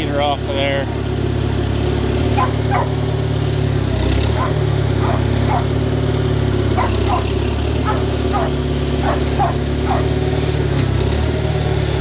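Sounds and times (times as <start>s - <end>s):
tractor engine running: 0.0s - 12.0s
dog barking: 2.3s - 3.1s, 4.3s - 5.9s, 6.7s - 10.3s.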